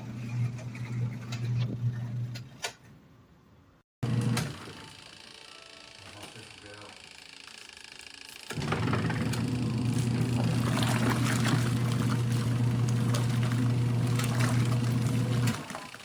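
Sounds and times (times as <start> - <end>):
washing machine motor hum: 0.0 - 2.4, 4.0 - 16.0
water churning and splashing: 8.6 - 16.0.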